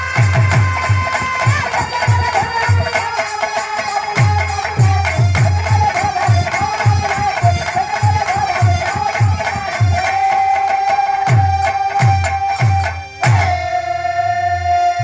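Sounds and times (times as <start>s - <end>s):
jingling percussion: 0.0s - 13.6s.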